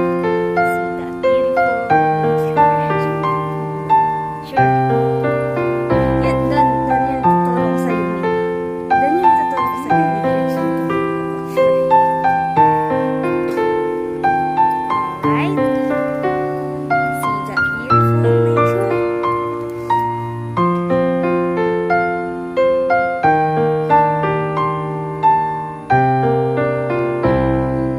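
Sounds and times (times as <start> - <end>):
gentle piano music: 0.0 - 27.9.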